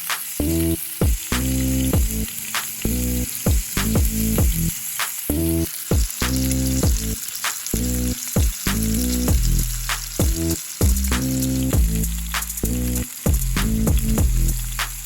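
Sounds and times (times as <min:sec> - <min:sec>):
steak sizzling in frying pan: 0:00.0 - 0:15.0
background music with pitched notes: 0:00.4 - 0:04.7, 0:07.8 - 0:15.0.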